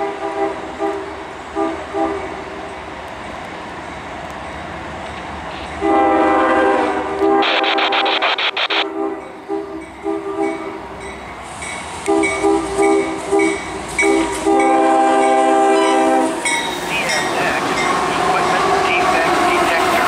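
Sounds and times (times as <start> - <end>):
locomotive air horn blasts: 0.0 - 2.3, 5.8 - 10.8, 12.0 - 16.4
passing train rushing and clatter: 0.0 - 20.0.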